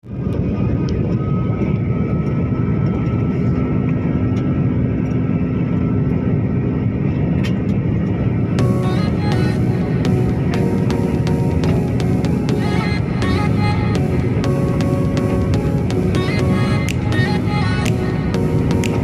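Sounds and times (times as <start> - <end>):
airliner engines droning: 0.1 - 19.0.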